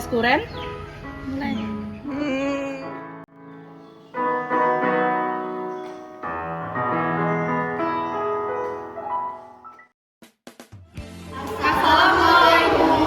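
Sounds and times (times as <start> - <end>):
piano music: 0.0 - 9.9.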